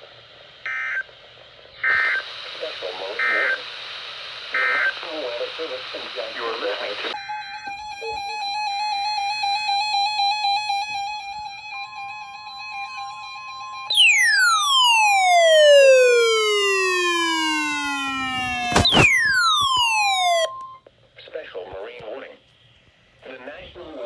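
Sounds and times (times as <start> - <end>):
steady warning alarm tone: 7.2 - 20.8
falling whistle-like glides: 14.0 - 20.7
sharp crack: 17.1 - 20.5.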